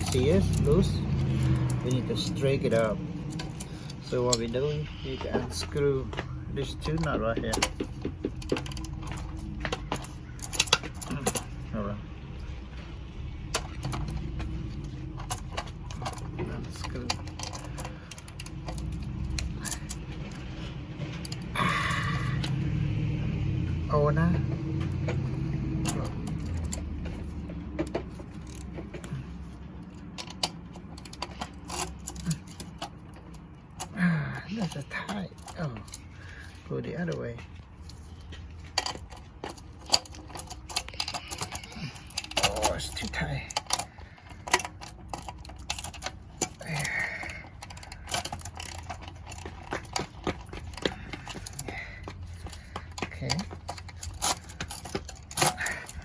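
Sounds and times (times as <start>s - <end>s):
hand tool clicking on metal: 38.7s - 56.0s.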